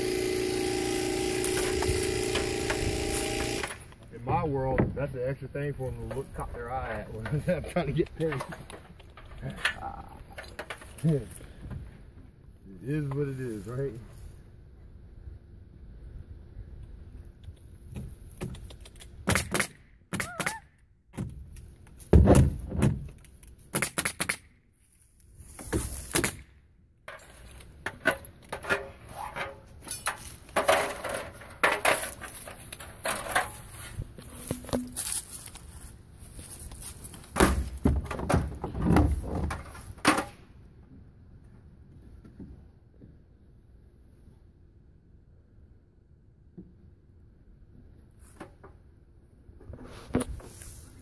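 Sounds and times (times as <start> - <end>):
knocks of wooden boards: 22.1 - 23.2, 37.3 - 40.3.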